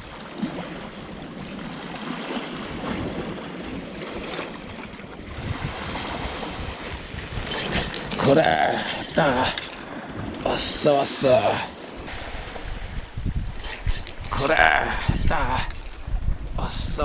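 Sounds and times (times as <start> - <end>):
sea waves washing ashore: 1.8 - 10.4, 11.9 - 17.0
wind buffeting microphone: 4.7 - 10.6, 12.0 - 17.0.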